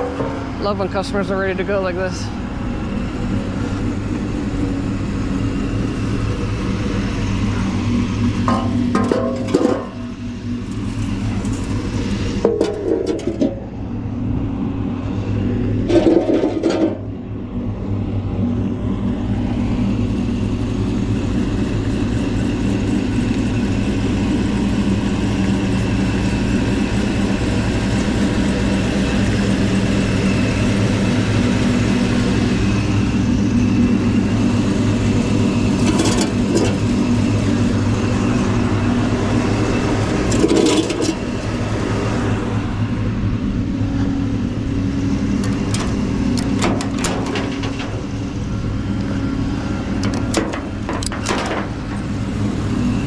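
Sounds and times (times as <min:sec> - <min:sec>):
metal clanks and knocks: 0:00.0 - 0:00.6, 0:08.4 - 0:10.2, 0:11.3 - 0:13.7, 0:15.8 - 0:17.1, 0:35.7 - 0:37.0, 0:40.2 - 0:41.3, 0:45.4 - 0:48.4, 0:49.9 - 0:52.2
engine idling: 0:00.0 - 0:53.0.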